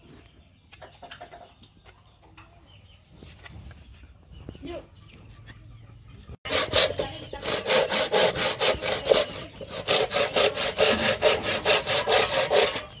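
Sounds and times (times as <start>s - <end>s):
hand saw cutting wood: 6.4s - 13.0s.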